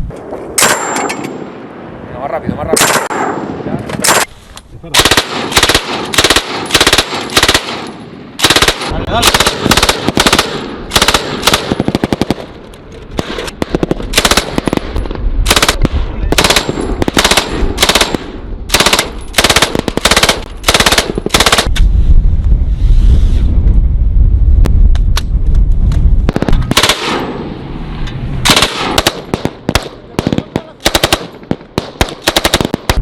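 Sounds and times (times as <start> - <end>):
heavy low rumble: 1.3 - 31.9
machine-gun fire bursts: 5.0 - 12.5, 13.2 - 21.7, 26.3 - 27.2, 28.5 - 33.0.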